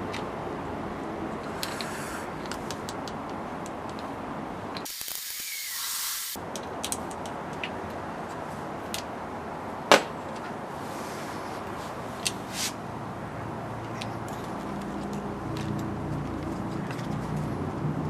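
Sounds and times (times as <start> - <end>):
hiss: 1.6 - 2.3, 4.9 - 6.4.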